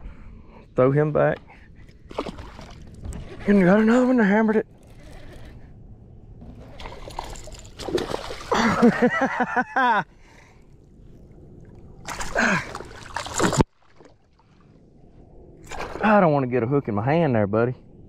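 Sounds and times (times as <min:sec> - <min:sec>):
fish splashing and thrashing in water: 0:02.1 - 0:03.4, 0:06.4 - 0:09.1, 0:11.7 - 0:14.6, 0:15.6 - 0:16.0.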